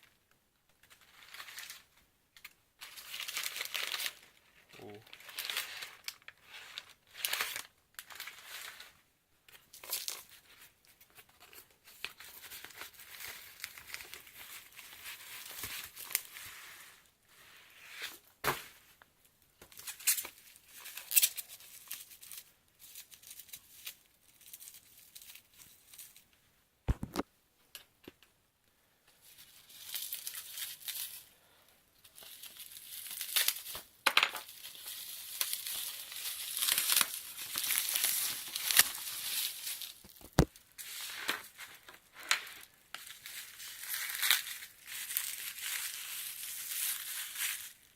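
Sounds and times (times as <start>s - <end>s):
packaging tearing and crinkling: 2.8s - 8.4s, 32.2s - 47.9s.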